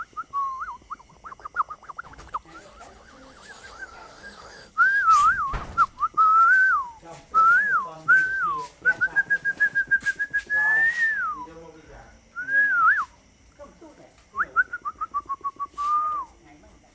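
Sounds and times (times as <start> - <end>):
fluttering whistle: 0.0 - 11.4
whistled phrases: 0.0 - 11.6, 12.4 - 13.2, 14.3 - 16.3.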